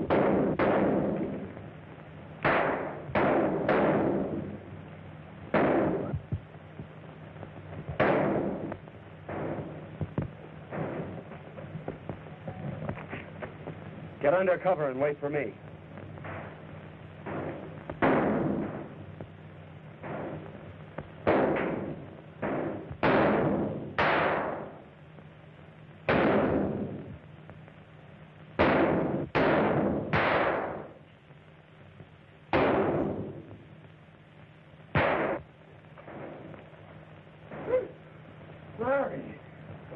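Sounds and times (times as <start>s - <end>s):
gunshots with ringing echo: 0.0s - 1.5s, 2.4s - 4.7s, 5.5s - 6.3s, 8.0s - 9.9s, 10.7s - 11.2s, 16.2s - 19.1s, 20.0s - 20.6s, 21.2s - 24.8s, 26.1s - 27.1s, 28.6s - 31.0s, 32.5s - 33.6s, 34.9s - 36.5s.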